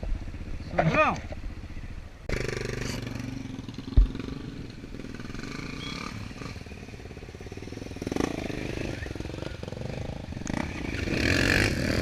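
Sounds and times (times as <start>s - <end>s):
motorcycle engine running: 1.5s - 12.0s
low thump: 3.9s - 4.2s.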